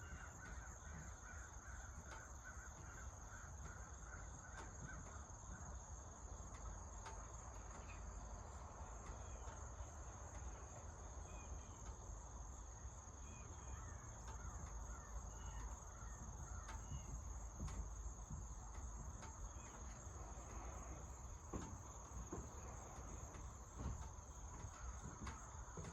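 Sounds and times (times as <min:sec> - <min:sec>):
faint bird calls: 0:00.0 - 0:05.8, 0:12.7 - 0:25.9
insect chirring: 0:00.0 - 0:07.4, 0:08.0 - 0:25.9
soft knocks: 0:15.5 - 0:25.9.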